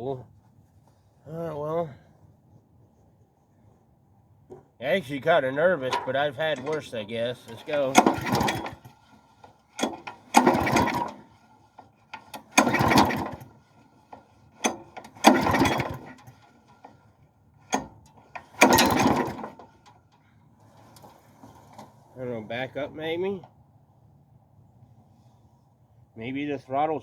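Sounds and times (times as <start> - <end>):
lawnmower engine pull-starting: 4.5 - 23.6.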